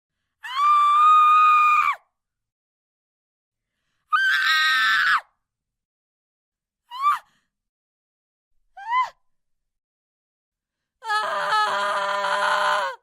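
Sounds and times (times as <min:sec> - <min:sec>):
woman screaming: 0:00.5 - 0:02.0, 0:11.0 - 0:13.0.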